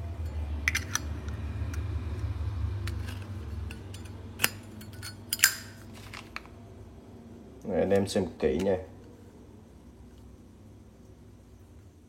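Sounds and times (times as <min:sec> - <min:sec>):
lighter clinking and clicking: 0:03.7 - 0:05.8.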